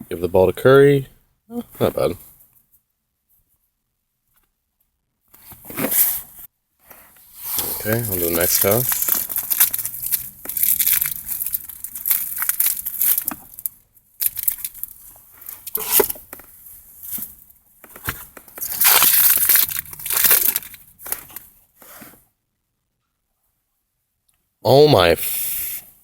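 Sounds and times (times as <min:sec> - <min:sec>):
foil wrapper crinkling: 0:07.7 - 0:16.2, 0:18.6 - 0:21.5.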